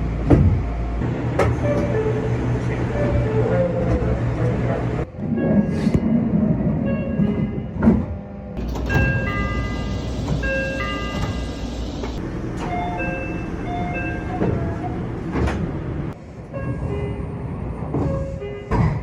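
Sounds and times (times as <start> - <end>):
train rumble: 0.0 - 19.0
train door electronic chimes: 8.6 - 15.0.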